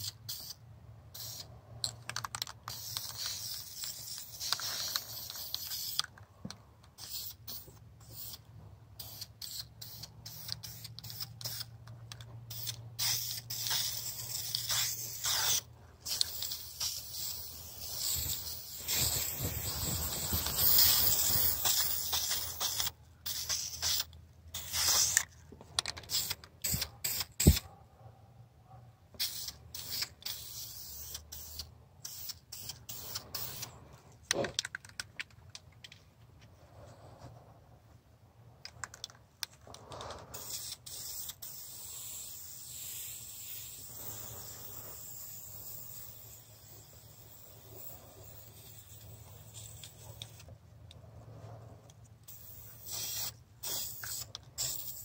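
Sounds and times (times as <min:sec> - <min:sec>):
spray hissing in bursts: 0:12.5 - 0:25.2, 0:40.3 - 0:50.4, 0:52.3 - 0:55.0.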